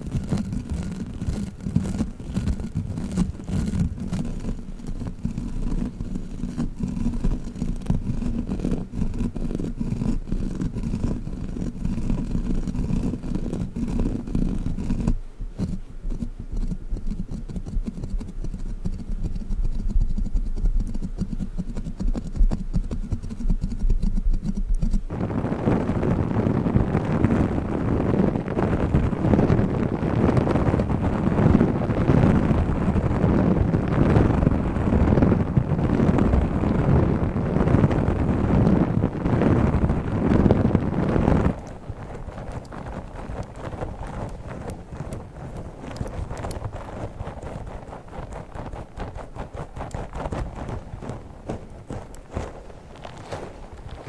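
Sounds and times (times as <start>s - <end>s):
sticky toy sticking and peeling: 0.0s - 25.2s, 26.2s - 54.0s
handling of an object: 41.5s - 54.0s.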